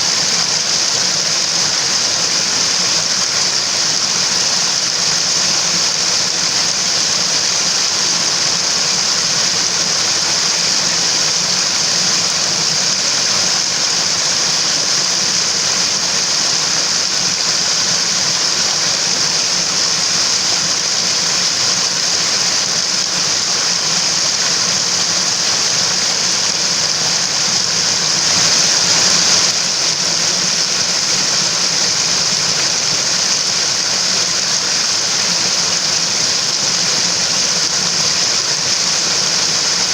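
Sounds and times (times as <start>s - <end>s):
mountain water rushing: 19.0s - 39.9s.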